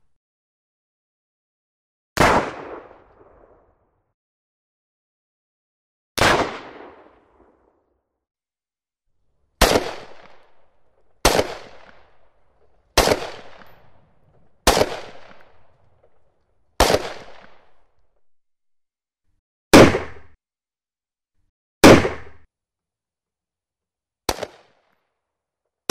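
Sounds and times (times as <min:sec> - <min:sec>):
pistol shots: 0:09.6 - 0:18.1, 0:19.7 - 0:20.4, 0:21.8 - 0:22.5, 0:24.3 - 0:24.7.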